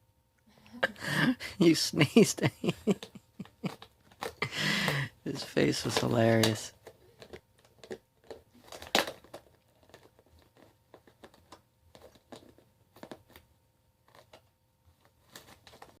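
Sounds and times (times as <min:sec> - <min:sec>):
dog chewing plastic container: 0:03.0 - 0:04.4, 0:05.9 - 0:16.0
plastic crinkling and clicking: 0:05.7 - 0:16.0.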